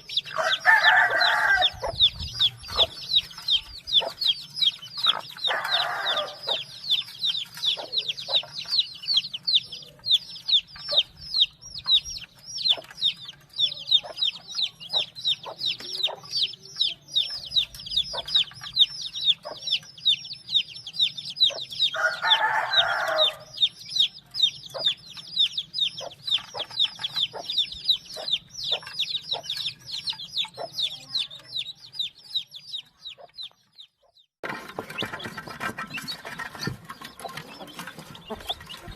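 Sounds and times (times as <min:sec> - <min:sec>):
adult chicken calling: 0:00.0 - 0:07.0, 0:21.4 - 0:24.2
chicks peeping: 0:00.0 - 0:38.9.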